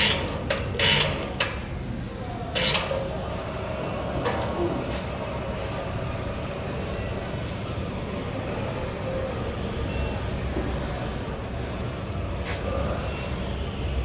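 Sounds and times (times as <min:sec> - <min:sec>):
machinery rumble with hiss: 0:00.0 - 0:14.0
faint high thin whine: 0:03.8 - 0:14.0.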